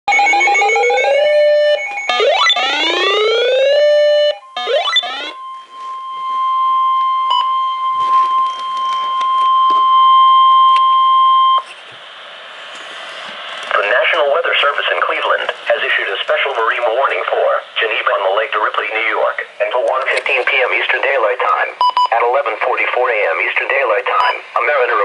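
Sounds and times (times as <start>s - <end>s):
rising electronic pitch sweeps: 0.1s - 11.7s
steady warning alarm tone: 0.1s - 12.6s.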